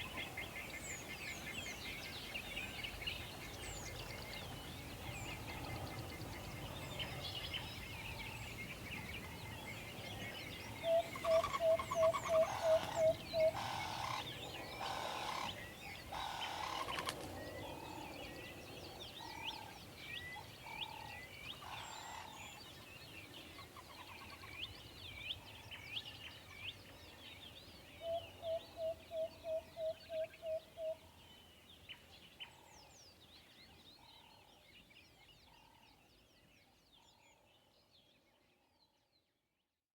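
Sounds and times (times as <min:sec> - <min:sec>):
small birds chirping: 0:00.0 - 0:39.2
owl hooting: 0:10.8 - 0:14.2.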